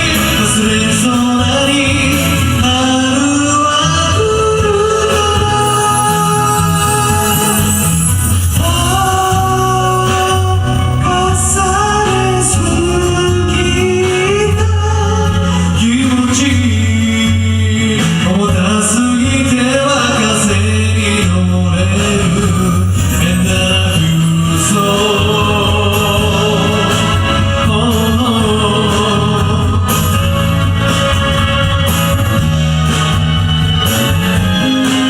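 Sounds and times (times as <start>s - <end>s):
person singing: 0.0s - 35.0s
pop ballad backing track: 0.0s - 35.0s.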